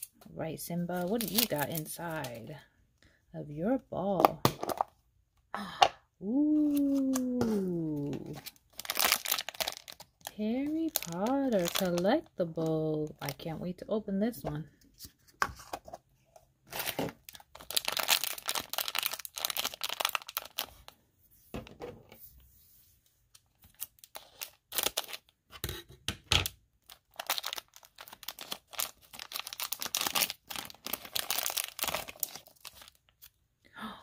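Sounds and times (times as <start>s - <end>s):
packaging tearing and crinkling: 1.0s - 2.2s, 8.3s - 12.0s, 16.7s - 20.8s, 23.6s - 25.3s, 26.8s - 33.3s.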